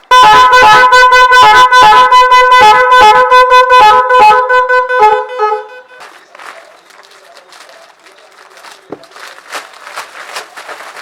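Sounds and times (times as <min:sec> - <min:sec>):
musical car horn playing a tune: 0:00.0 - 0:06.2.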